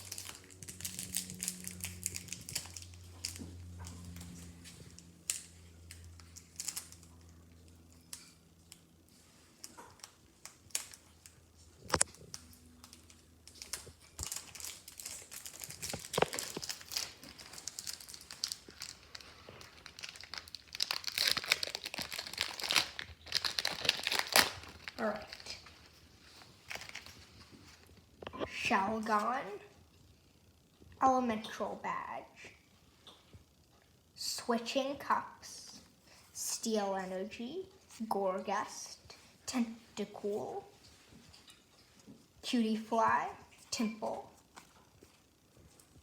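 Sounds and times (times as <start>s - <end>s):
foil pack crinkling: 0.0s - 7.4s, 8.0s - 28.4s
low steady hum: 0.0s - 46.0s.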